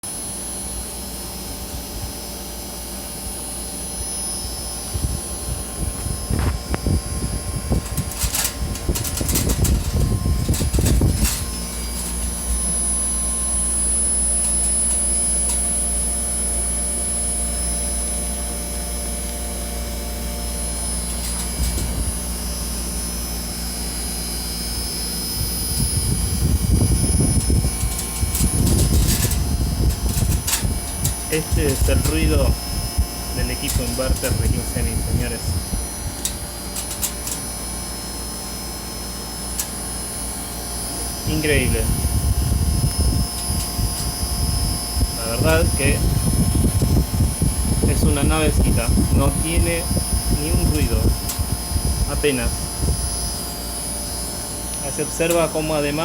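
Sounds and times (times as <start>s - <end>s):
air conditioner unit humming: 0.0s - 56.0s
gusty rumbling: 5.0s - 12.9s, 25.4s - 33.1s, 41.8s - 53.2s.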